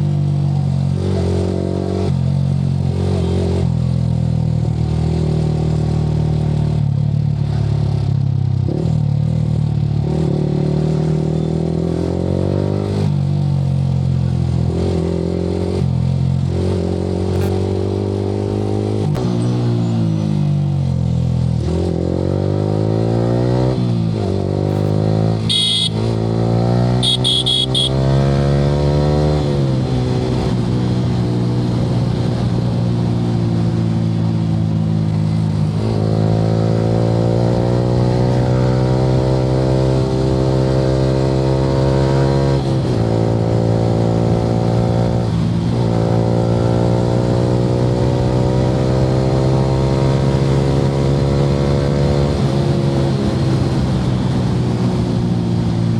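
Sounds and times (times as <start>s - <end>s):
motorcycle engine accelerating: 0.0s - 55.9s
horn beeping: 24.7s - 26.2s, 26.9s - 28.2s.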